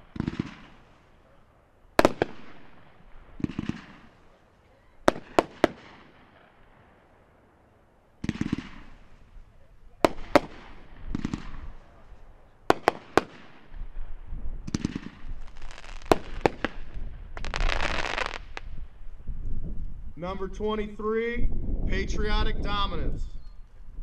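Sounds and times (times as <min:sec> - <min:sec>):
firework bangs: 0:00.0 - 0:01.3, 0:01.9 - 0:07.4, 0:08.2 - 0:18.8
firework crackling: 0:00.0 - 0:19.1.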